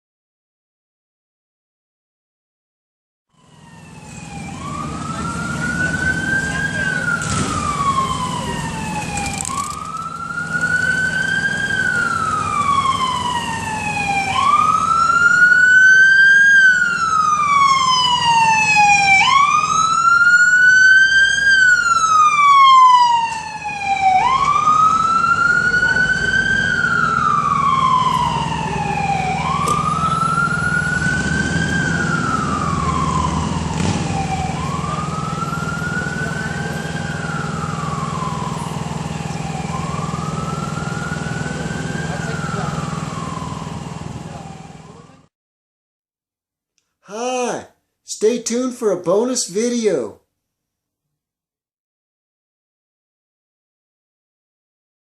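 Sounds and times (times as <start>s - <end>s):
ambulance siren wailing: 3.3s - 45.3s.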